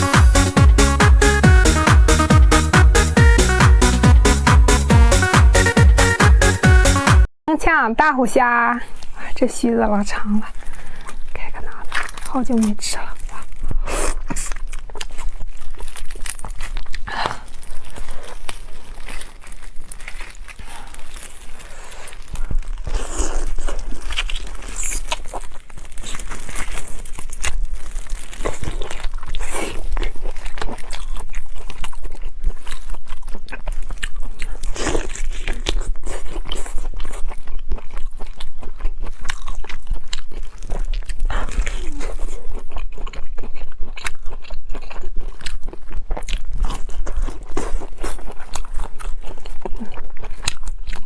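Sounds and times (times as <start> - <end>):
crunching and chewing food: 8.8 - 51.0.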